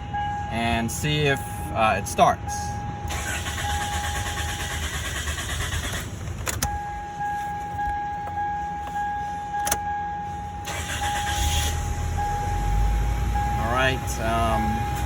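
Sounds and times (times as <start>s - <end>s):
car engine running: 3.0s - 15.0s.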